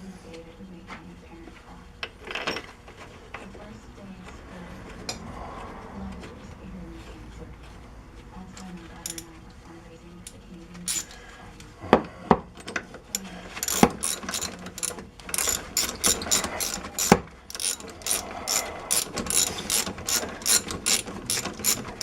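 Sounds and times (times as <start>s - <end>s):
socket ratchet clicking: 10.9s - 11.2s, 13.6s - 22.0s.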